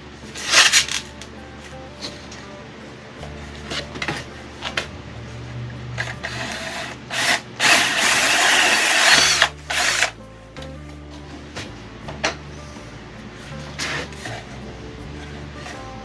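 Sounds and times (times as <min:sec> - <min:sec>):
power drill with hole saw: 0:06.0 - 0:10.2.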